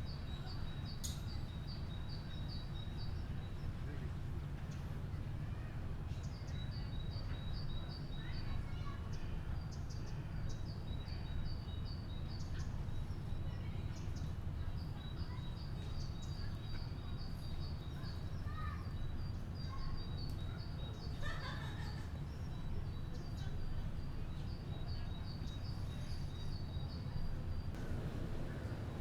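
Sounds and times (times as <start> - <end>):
faint voices: 26.9 - 29.0
low outdoor rumble: 27.0 - 29.0.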